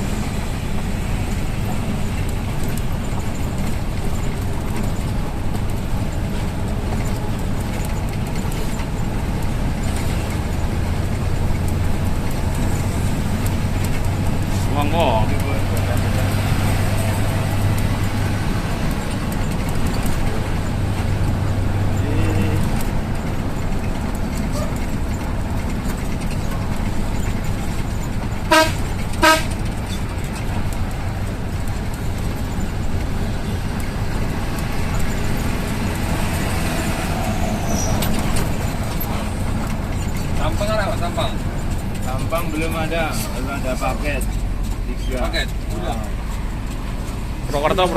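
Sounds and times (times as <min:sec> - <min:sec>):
bus engine idling: 0:00.0 - 0:47.9
vehicle horn toots: 0:28.5 - 0:29.6.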